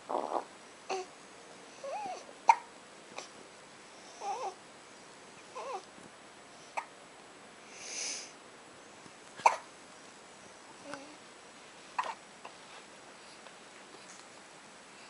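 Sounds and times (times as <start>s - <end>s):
baby cooing and grunting: 0.1s - 1.1s, 1.8s - 3.4s, 4.2s - 4.6s, 5.5s - 5.9s, 12.0s - 12.2s
baby hiccuping: 2.0s - 2.7s, 9.4s - 9.7s, 12.0s - 12.2s.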